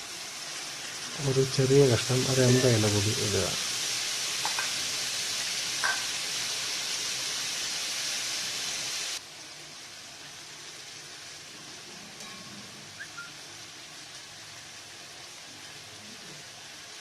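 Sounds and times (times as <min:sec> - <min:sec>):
gas burner hissing: 0:00.0 - 0:17.0.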